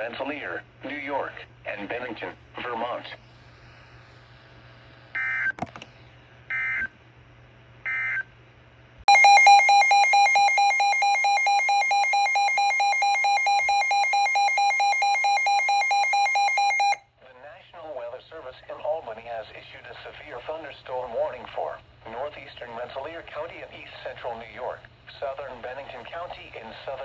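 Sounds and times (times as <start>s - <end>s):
two-tone attention signal: 9.1s - 17.0s.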